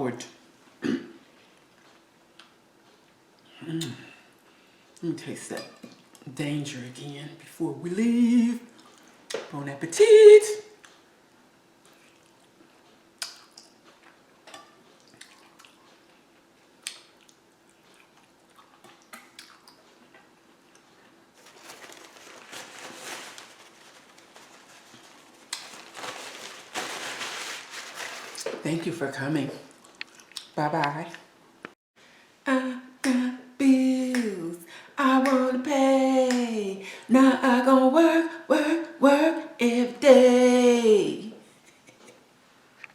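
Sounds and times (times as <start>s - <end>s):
chewing: 11.8s - 12.6s, 14.9s - 16.2s, 16.8s - 25.7s, 29.7s - 30.6s.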